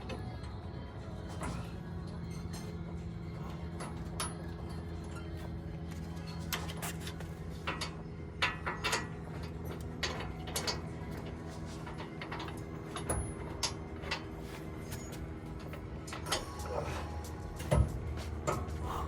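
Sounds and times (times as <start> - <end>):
low hum: 0.0 - 19.0
hand tools clinking on metal: 1.3 - 19.0.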